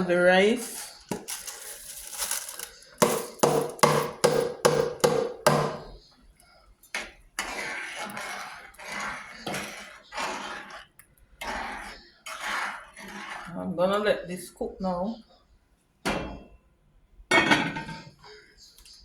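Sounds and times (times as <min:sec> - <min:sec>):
scraping and stirring in pot: 0:00.0 - 0:15.5
utensil knocking on cooking pot: 0:03.0 - 0:06.0.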